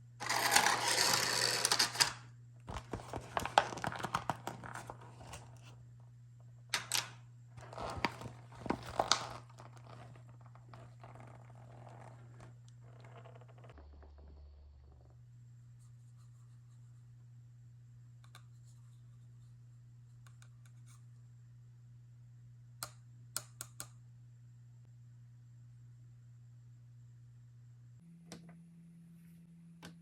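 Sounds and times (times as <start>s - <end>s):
low steady hum: 0.0s - 30.0s
toy pieces clicking down: 0.2s - 2.2s
packaging rustling: 2.7s - 5.7s, 7.6s - 12.4s.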